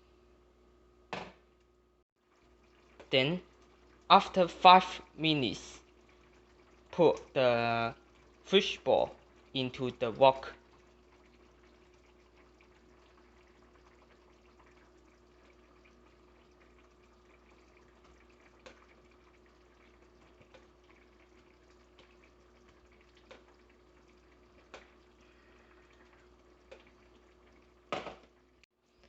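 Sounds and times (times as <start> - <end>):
sauce simmering with soft hiss: 0.0 - 29.0
small pops from simmering sauce: 10.6 - 25.1, 26.5 - 28.4.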